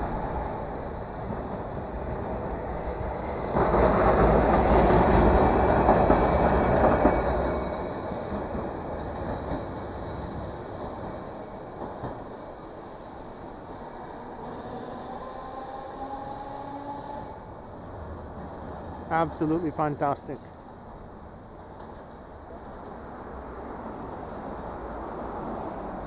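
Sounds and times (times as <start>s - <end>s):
tram running on track: 0.0s - 26.0s
tram wheels squealing: 0.1s - 17.5s.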